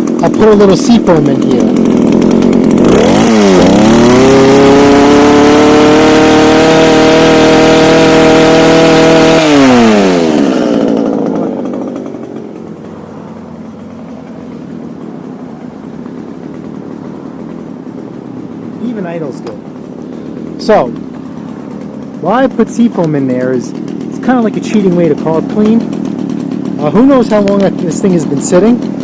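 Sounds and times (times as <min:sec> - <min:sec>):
person speaking: 0:00.0 - 0:02.0, 0:18.6 - 0:19.8, 0:20.4 - 0:21.4, 0:22.1 - 0:26.0, 0:26.8 - 0:28.9
hedge trimmer engine revving: 0:00.0 - 0:29.0.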